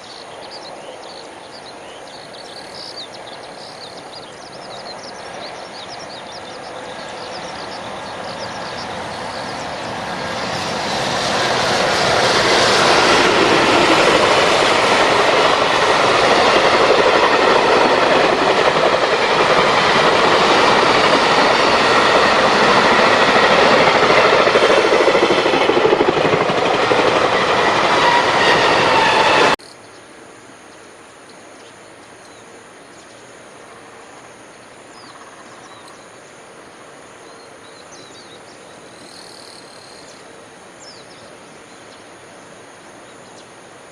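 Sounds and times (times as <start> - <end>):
freight train passing: 0.0 - 29.6.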